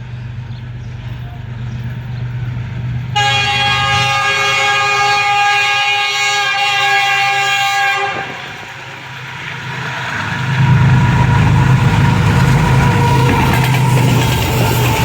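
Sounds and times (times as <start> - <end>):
locomotive engine humming: 0.0 - 15.0
locomotive horn blast: 3.1 - 9.0.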